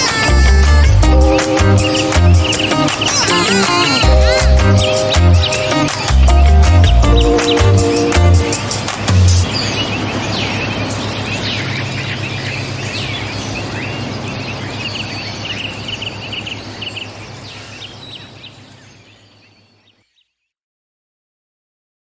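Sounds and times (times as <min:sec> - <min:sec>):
background hiss: 0:00.0 - 0:19.8
birds chirping: 0:00.0 - 0:20.5
steady low drone: 0:00.2 - 0:09.6.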